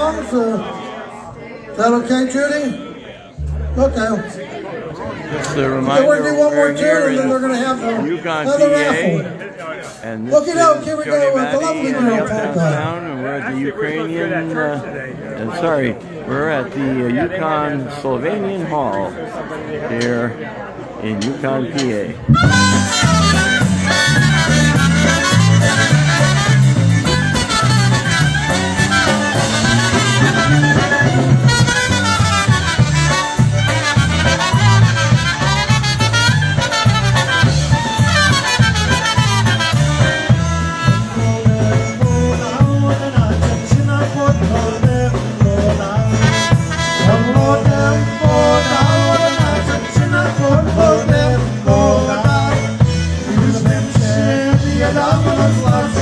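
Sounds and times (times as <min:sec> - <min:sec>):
polka band playing: 0:00.0 - 0:00.4, 0:03.4 - 0:04.4, 0:22.2 - 0:56.0
oom-pah bass beat: 0:03.4 - 0:04.0, 0:22.3 - 0:56.0.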